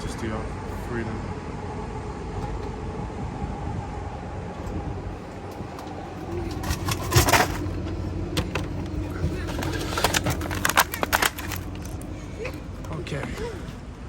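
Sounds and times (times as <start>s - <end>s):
low street rumble: 0.0s - 14.0s
vending machine hum: 0.0s - 14.0s
package dropping into tray: 8.4s - 12.0s.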